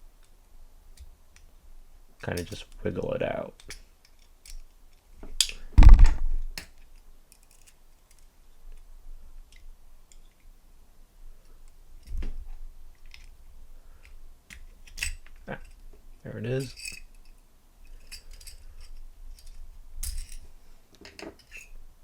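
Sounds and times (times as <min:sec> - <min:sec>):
low thump: 0:05.8 - 0:06.4.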